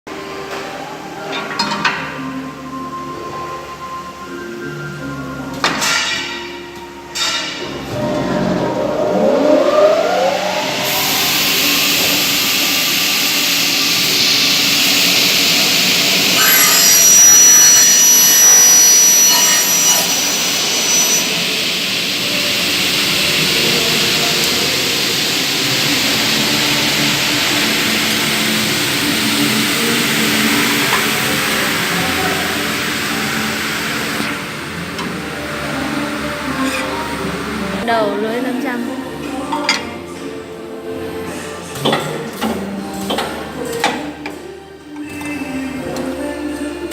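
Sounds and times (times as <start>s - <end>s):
cutting saw motors whining: 7.6s - 37.8s
thin high ringing: 15.6s - 32.4s.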